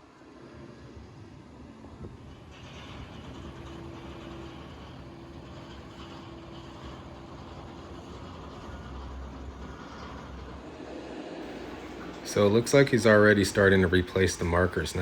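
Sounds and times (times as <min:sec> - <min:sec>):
distant engine rumble: 0:00.7 - 0:15.0
faint steady hum: 0:11.4 - 0:15.0.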